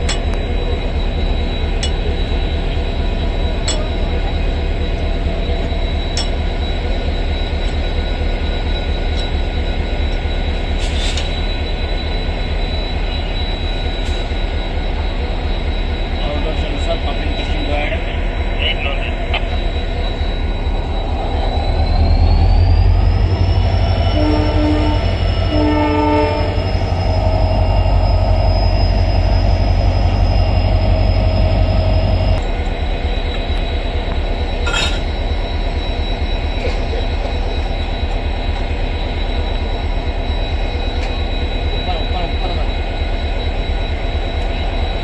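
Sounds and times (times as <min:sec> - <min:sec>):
locomotive engine whine and rumble: 0:00.0 - 0:45.0
locomotive horn toots: 0:23.9 - 0:27.3.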